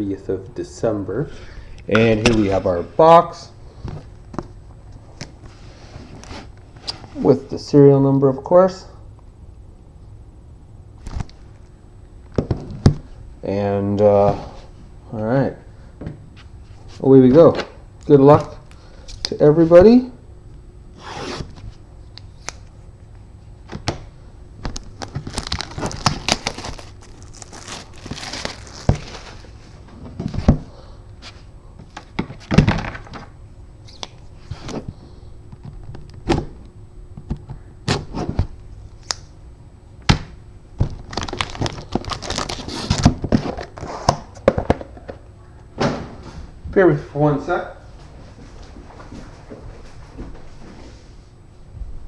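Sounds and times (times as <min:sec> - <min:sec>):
plastic wrap crinkling and tearing: 0:24.7 - 0:29.6, 0:40.8 - 0:43.8.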